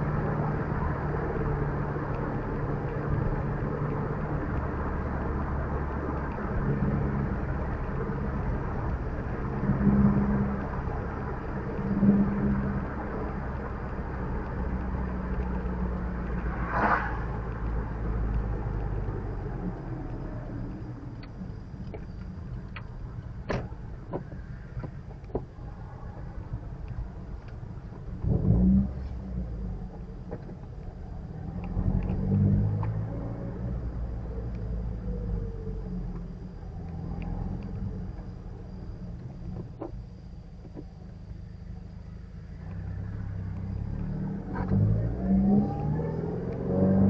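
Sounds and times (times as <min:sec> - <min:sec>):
car road and engine rumble: 0:00.0 - 0:47.0
light clicks and knocks: 0:21.2 - 0:28.2.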